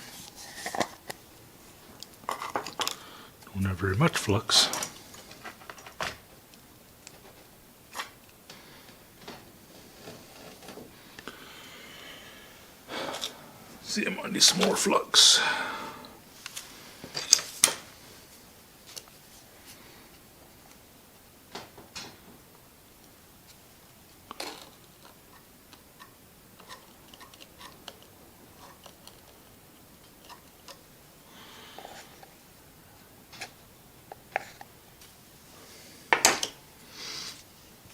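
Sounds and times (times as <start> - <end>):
tools clicking and tapping: 25.3 - 29.4.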